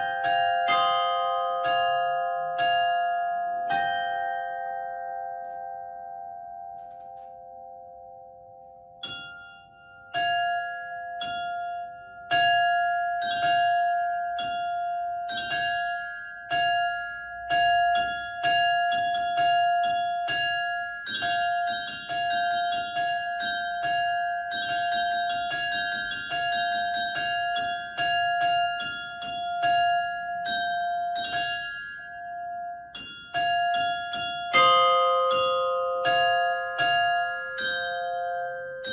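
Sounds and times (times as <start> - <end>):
church bells ringing: 0.0 - 5.6, 33.3 - 38.9.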